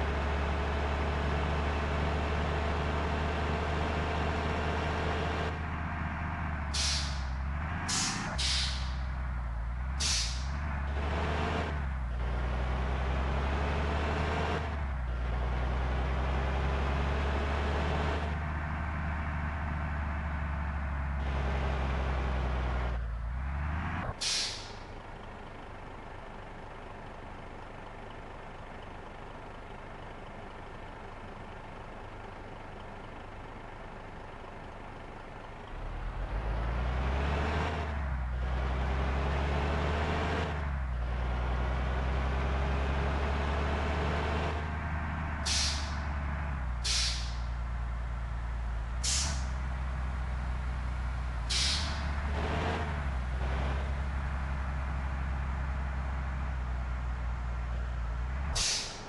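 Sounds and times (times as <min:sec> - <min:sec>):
diesel bus engine: 0:00.0 - 0:59.0
air brake hiss: 0:06.8 - 0:07.2, 0:07.9 - 0:09.0, 0:10.0 - 0:10.5, 0:24.2 - 0:24.8, 0:45.5 - 0:46.0, 0:46.8 - 0:47.5, 0:49.0 - 0:49.5, 0:51.5 - 0:52.0, 0:58.6 - 0:59.0.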